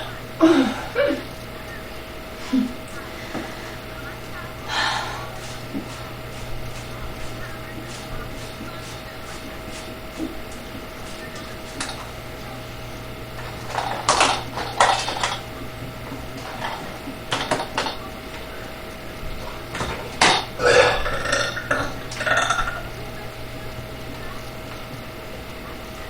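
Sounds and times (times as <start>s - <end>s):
man burping: 20.2s - 22.8s.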